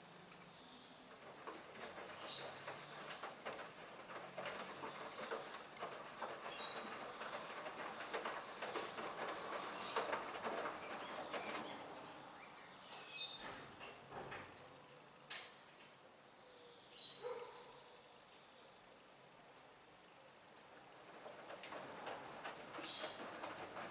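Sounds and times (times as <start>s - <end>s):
washing machine tumbling laundry: 0.0s - 14.9s, 20.6s - 23.9s.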